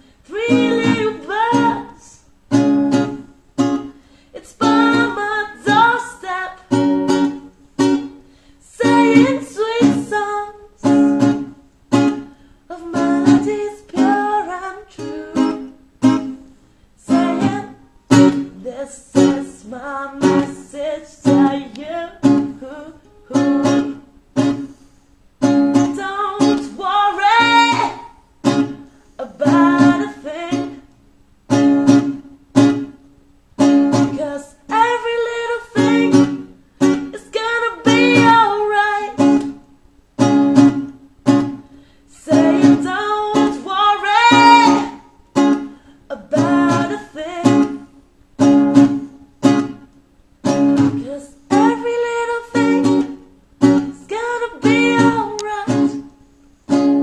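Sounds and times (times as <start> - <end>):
person singing: 0.0 - 2.3, 4.3 - 7.4, 8.6 - 11.5, 12.7 - 16.4, 17.0 - 24.1, 25.7 - 30.8, 34.0 - 39.6, 42.1 - 47.9, 50.8 - 56.1
acoustic guitar reggae strumming: 0.0 - 57.0.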